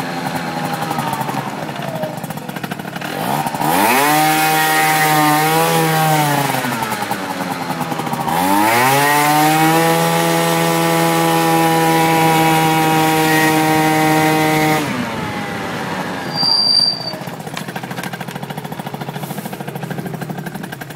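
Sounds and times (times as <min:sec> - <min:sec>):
scooter engine revving: 0:00.0 - 0:20.9
high-pitched squeal: 0:16.2 - 0:17.3.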